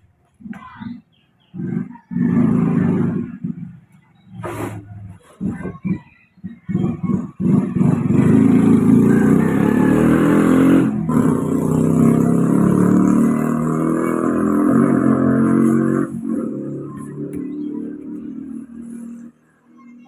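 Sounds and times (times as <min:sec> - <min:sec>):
vehicle engine running: 0:05.4 - 0:20.0.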